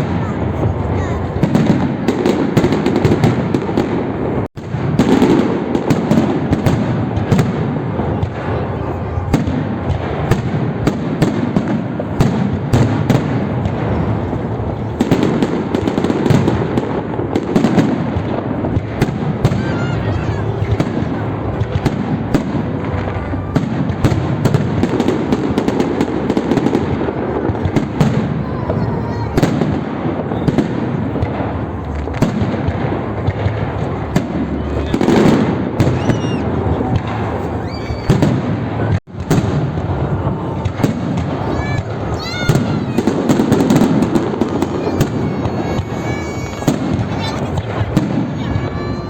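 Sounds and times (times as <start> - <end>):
fireworks bangs and crackling: 0.0 - 49.0.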